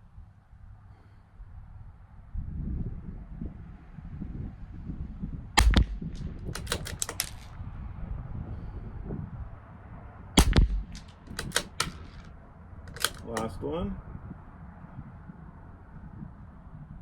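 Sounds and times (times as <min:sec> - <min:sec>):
rifle bolt metallic clicks: 0:05.6 - 0:07.5, 0:10.4 - 0:12.3, 0:12.9 - 0:13.7
rifle shots: 0:05.6 - 0:07.5, 0:10.4 - 0:12.3, 0:12.9 - 0:13.6.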